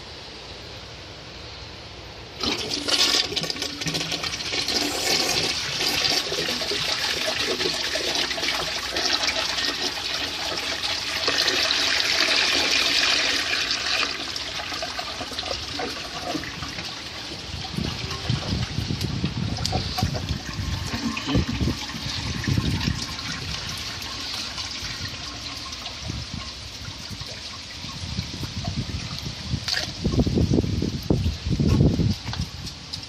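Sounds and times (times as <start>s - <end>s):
toilet flushing: 2.4s - 18.7s, 19.6s - 27.7s.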